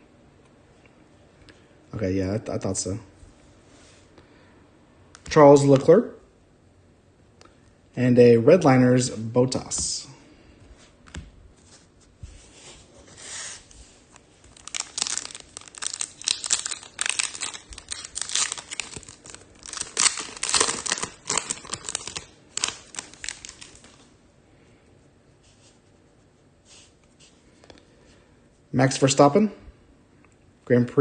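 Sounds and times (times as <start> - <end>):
foil wrapper tearing and crinkling: 14.5 - 24.0.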